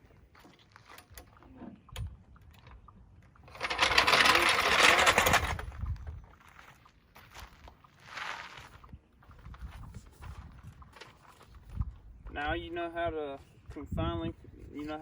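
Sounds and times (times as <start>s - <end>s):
impact wrench rattling: 3.5s - 5.6s.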